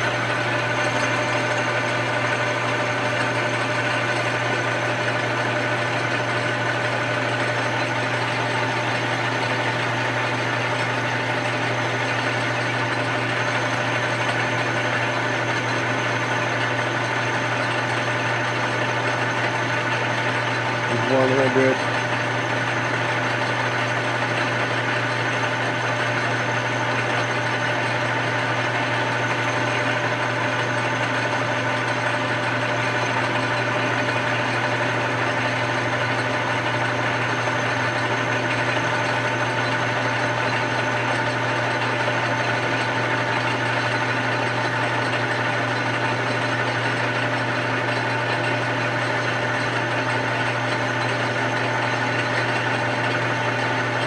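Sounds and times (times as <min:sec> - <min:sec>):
metal lathe humming and whining: 0:00.0 - 0:54.0.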